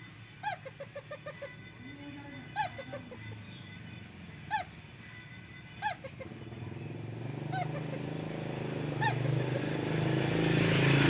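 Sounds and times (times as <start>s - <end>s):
engine hum: 2.9s - 11.0s
rising and falling animal call: 5.8s - 11.0s.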